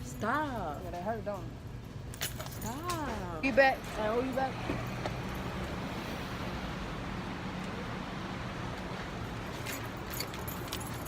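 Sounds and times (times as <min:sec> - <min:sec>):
small metallic clinks: 0:02.1 - 0:03.3, 0:09.5 - 0:11.0.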